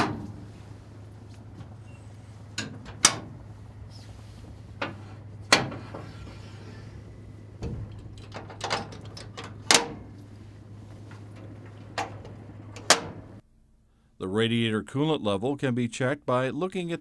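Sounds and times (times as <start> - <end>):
metal doors clacking: 0.0 - 13.4
low steady hum: 0.0 - 17.0.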